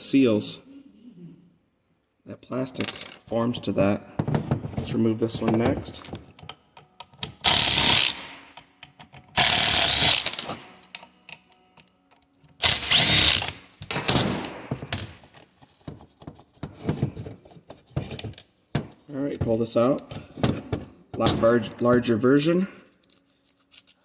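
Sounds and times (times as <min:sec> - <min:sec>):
power driver whirring: 0:07.4 - 0:08.2, 0:09.4 - 0:10.5, 0:12.6 - 0:13.6.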